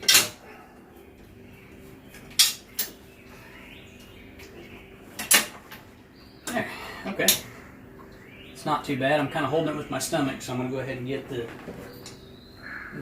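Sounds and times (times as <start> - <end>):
metal clanks: 0.0 - 0.4
faint steady hum: 0.0 - 13.0.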